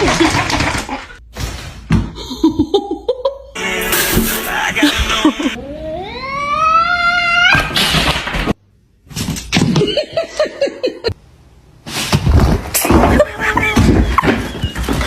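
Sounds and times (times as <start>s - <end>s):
rhythmic laughing: 2.4s - 5.6s
loud voices: 3.6s - 5.6s.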